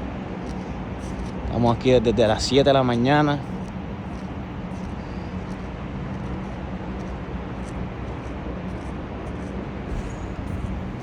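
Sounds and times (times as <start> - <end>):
machinery rushing hum: 0.0 - 11.0.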